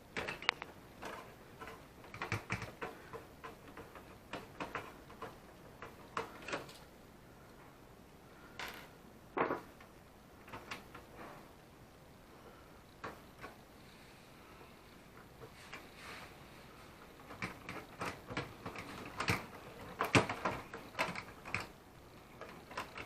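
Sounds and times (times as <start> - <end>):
small parts and tools clicking: 0.2 - 6.9, 17.2 - 23.0.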